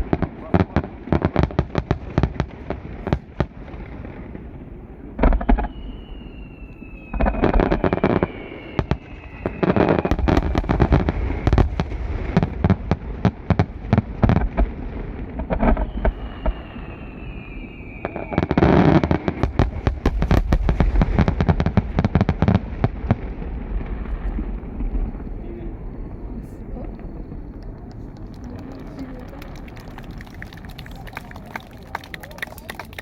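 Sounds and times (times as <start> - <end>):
fireworks bangs and crackling: 0.0 - 33.0
firework whistle sliding down: 5.3 - 10.7, 15.7 - 19.2.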